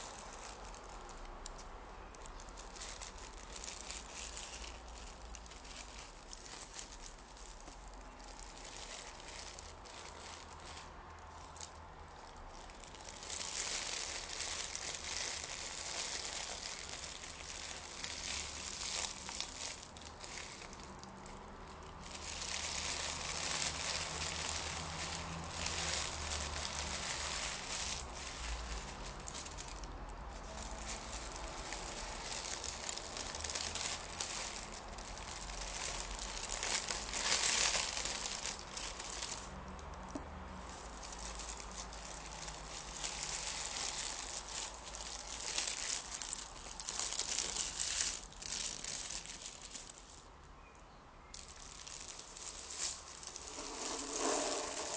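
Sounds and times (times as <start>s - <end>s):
paper crinkling: 0.0s - 39.8s, 40.6s - 50.2s, 51.4s - 54.9s.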